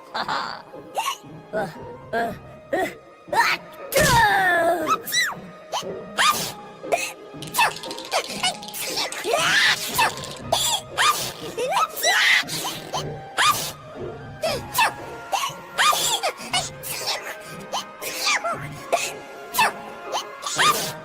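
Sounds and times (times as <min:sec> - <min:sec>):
music: 0:00.0 - 0:21.0
rhythmic sneezes: 0:05.7 - 0:13.8, 0:14.4 - 0:21.0.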